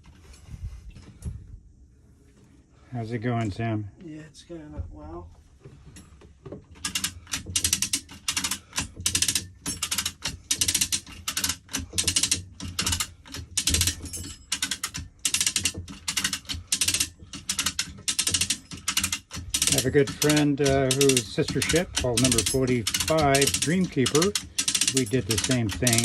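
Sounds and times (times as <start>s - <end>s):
ratcheting hoist pawl clicking: 6.8s - 26.0s.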